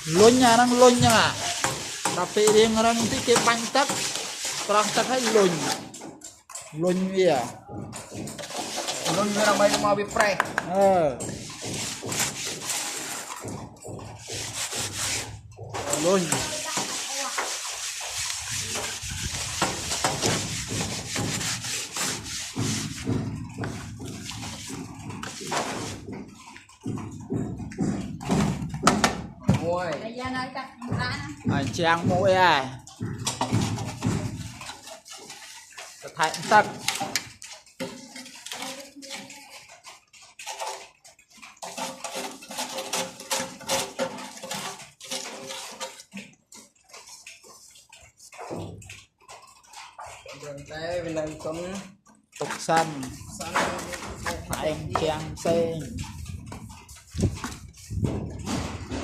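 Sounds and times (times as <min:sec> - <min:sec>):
rough scraping strokes: 0:00.0 - 0:06.1, 0:08.2 - 0:26.2, 0:41.6 - 0:46.2
water splashing and sloshing: 0:00.0 - 0:59.0
sharp knocks: 0:07.6 - 0:17.0, 0:18.6 - 0:29.7, 0:30.8 - 0:34.9.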